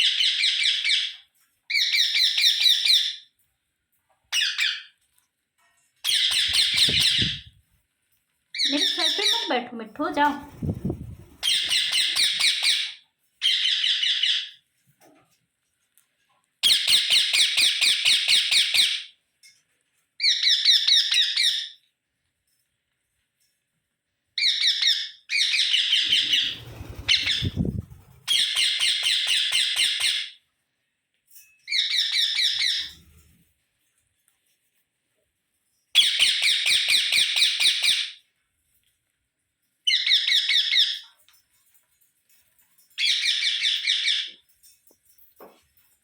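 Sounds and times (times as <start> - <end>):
parakeets shrill chattering calls: 6.0 - 7.6, 8.6 - 9.6, 10.2 - 14.6, 24.4 - 30.4, 31.7 - 33.3, 43.0 - 44.3.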